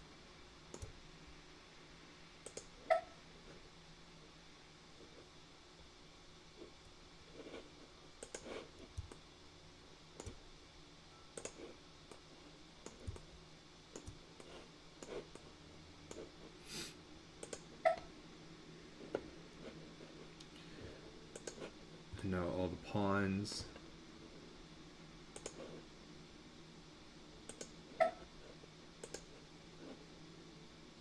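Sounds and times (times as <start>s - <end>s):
computer mouse clicks: 0.7s - 1.0s, 2.4s - 2.8s, 8.2s - 9.2s, 10.2s - 10.4s, 11.4s - 15.5s, 17.4s - 18.0s, 21.3s - 21.8s, 25.3s - 25.7s, 27.4s - 27.8s, 29.0s - 29.4s.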